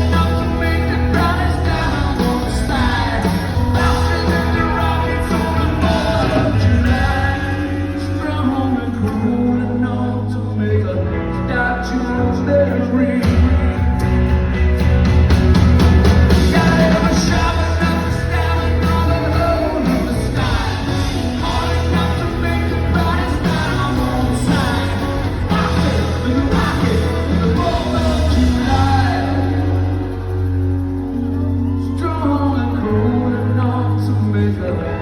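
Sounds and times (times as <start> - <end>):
lead singer vocals: 0.0 - 14.1, 16.2 - 35.0
rock band playing live: 0.0 - 35.0.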